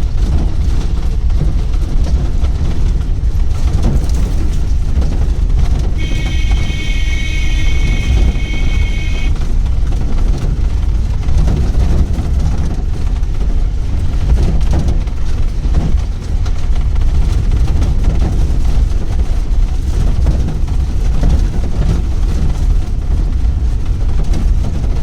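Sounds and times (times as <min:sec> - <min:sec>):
vehicle engine rumble on dirt road: 0:00.0 - 0:25.0
steady high-pitched tone: 0:06.0 - 0:09.4.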